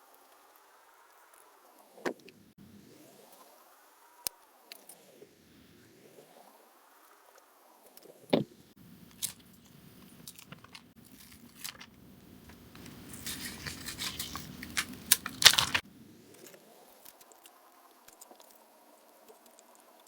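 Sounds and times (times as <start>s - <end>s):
paper crinkling: 9.2s - 15.8s.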